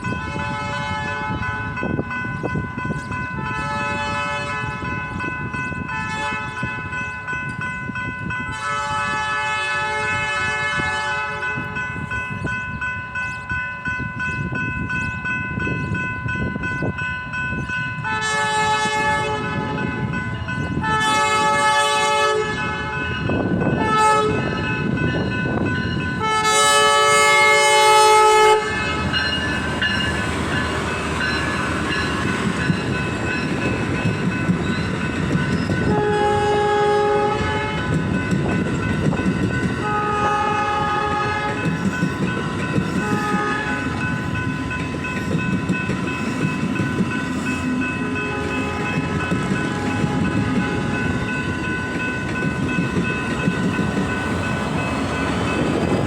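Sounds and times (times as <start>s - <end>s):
passing train rumbling and clattering: 0.0s - 56.0s
train air horn blasts: 0.2s - 1.8s, 3.4s - 5.0s, 5.9s - 6.7s, 8.5s - 11.8s, 18.0s - 20.2s, 20.8s - 24.9s, 26.2s - 29.5s, 35.8s - 38.0s, 39.8s - 41.8s, 43.0s - 44.1s, 48.0s - 51.4s.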